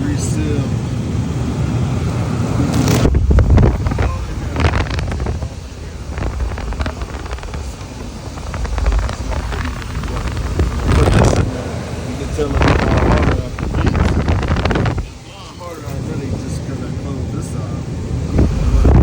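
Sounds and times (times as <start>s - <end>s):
air conditioner rumbling: 0.0s - 19.0s
knocks and rustles: 2.8s - 11.5s.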